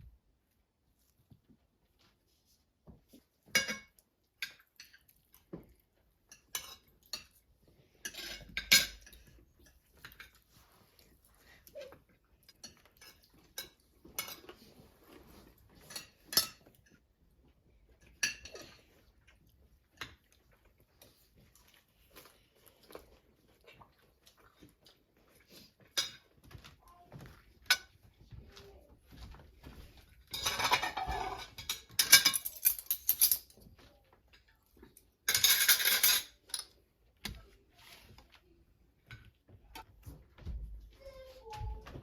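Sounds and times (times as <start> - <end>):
dishes and cutlery clinking: 3.1 - 17.1, 17.8 - 21.1, 25.7 - 37.3.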